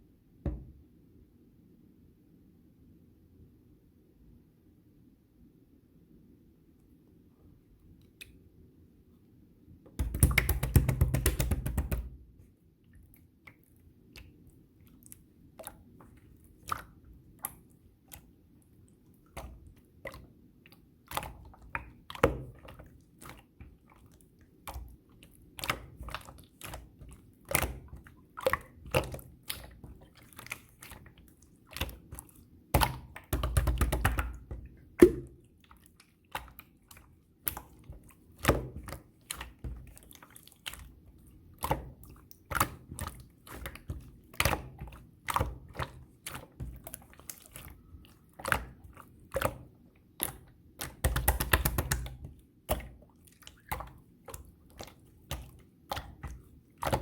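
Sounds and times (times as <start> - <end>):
slime squished by hand: 13.0 - 57.0.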